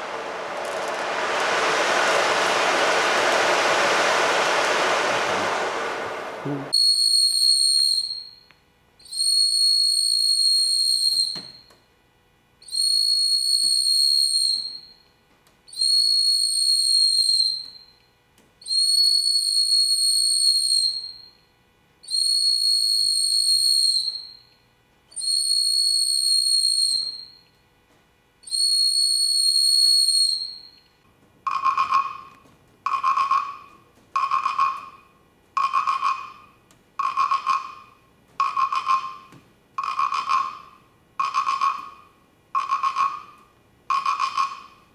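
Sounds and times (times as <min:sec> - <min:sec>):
whistle blowing: 0:00.0 - 0:11.7, 0:12.6 - 0:15.1, 0:15.7 - 0:18.0, 0:18.6 - 0:27.5, 0:28.4 - 0:30.9.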